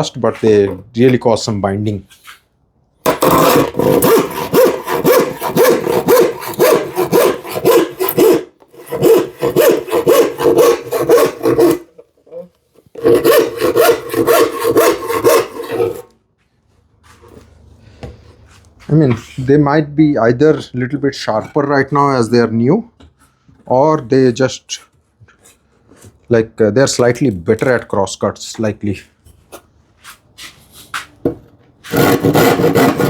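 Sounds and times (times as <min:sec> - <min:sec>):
hand saw cutting wood: 0:03.1 - 0:16.1, 0:31.8 - 0:33.0.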